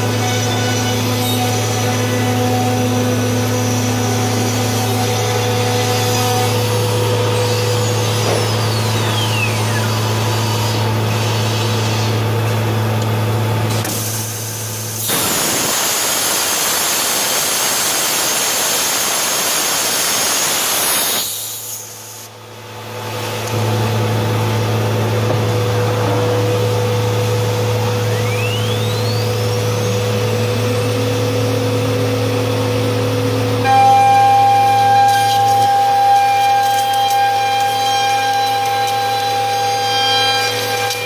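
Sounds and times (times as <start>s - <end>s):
motor whine rising in pitch: 0.0s - 14.0s, 22.3s - 41.0s
router motor hum: 23.3s - 41.0s.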